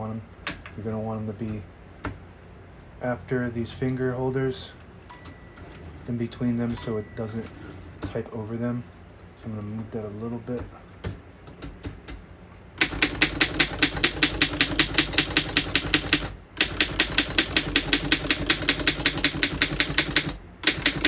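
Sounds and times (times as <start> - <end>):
manual typewriter typing: 12.8 - 21.0.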